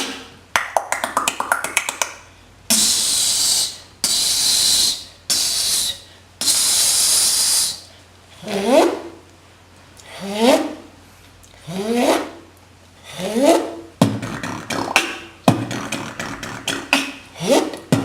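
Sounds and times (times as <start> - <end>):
beatbox sharp clicks: 0.0 - 7.8, 13.4 - 18.0
beatbox hissing blasts: 2.7 - 7.9, 13.5 - 18.0.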